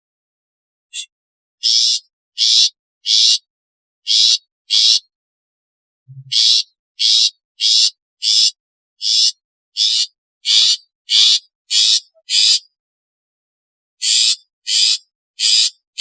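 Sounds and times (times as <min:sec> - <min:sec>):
shrike harsh rasping calls: 0:04.1 - 0:05.1, 0:06.2 - 0:12.7.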